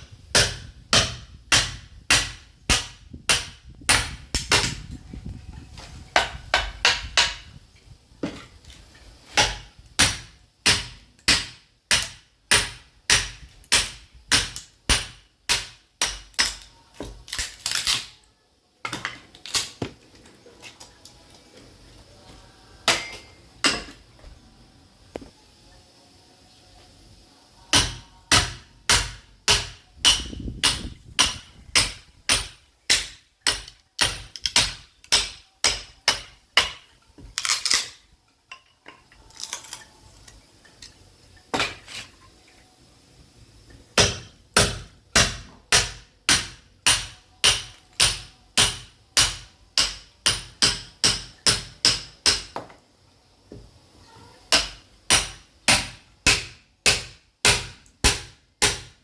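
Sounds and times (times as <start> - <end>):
sledgehammer striking steel chisel: 0.3 - 4.8, 27.8 - 36.9, 44.0 - 52.6, 54.6 - 59.0.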